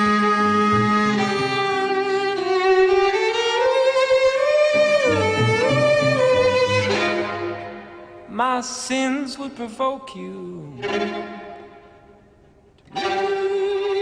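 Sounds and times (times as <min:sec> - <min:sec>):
low accompanying notes: 0:00.0 - 0:02.1, 0:04.8 - 0:08.4
bowed violin slow melody: 0:00.0 - 0:08.4, 0:10.4 - 0:14.0.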